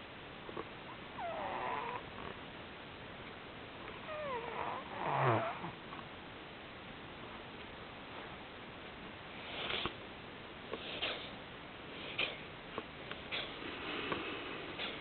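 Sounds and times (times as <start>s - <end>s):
cat snoring with squeaky whistle: 1.1s - 2.4s, 4.0s - 5.8s.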